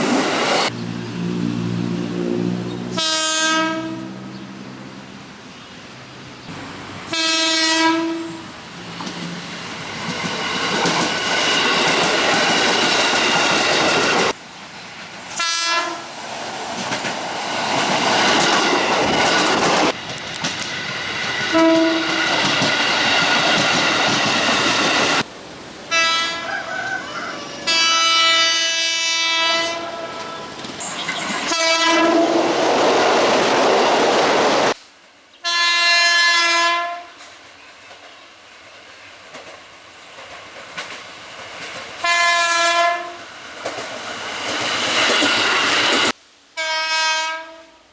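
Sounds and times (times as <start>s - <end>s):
trains rushing past: 0.0s - 35.2s, 37.1s - 46.2s
train horn notes: 2.1s - 4.3s, 7.0s - 8.5s, 15.4s - 16.1s, 21.5s - 22.3s, 25.9s - 30.5s, 31.4s - 32.5s, 35.4s - 37.2s, 42.0s - 43.3s, 46.6s - 47.9s
clattering train wheels: 8.9s - 25.3s, 37.2s - 42.4s, 43.4s - 46.2s.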